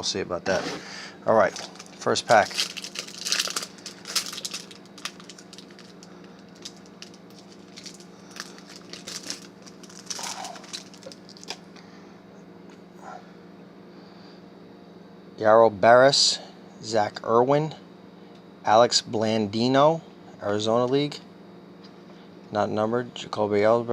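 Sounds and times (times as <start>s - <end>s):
steady low hum: 0.0s - 23.9s
wrapper crinkling and tearing: 1.4s - 11.6s.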